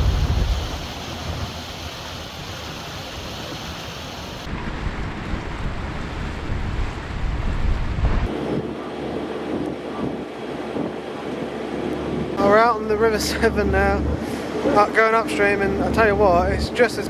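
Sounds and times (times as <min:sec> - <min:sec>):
rushing river water: 0:00.0 - 0:07.3
wind buffeting microphone: 0:00.0 - 0:17.0.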